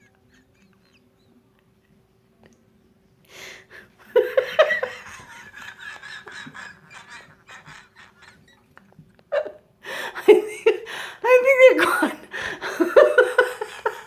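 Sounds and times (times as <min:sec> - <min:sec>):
person laughing: 0:04.1 - 0:08.7, 0:11.8 - 0:14.0.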